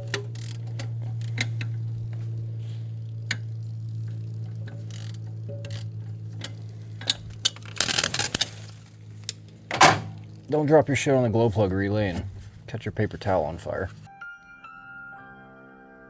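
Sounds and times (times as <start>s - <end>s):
hand ratchet clicking: 0.0s - 1.8s, 4.6s - 9.9s
steady low hum: 0.0s - 14.1s.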